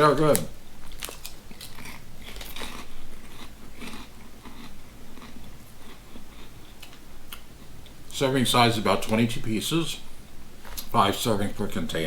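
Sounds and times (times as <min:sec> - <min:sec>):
person chewing potato chips: 0:00.3 - 0:07.8.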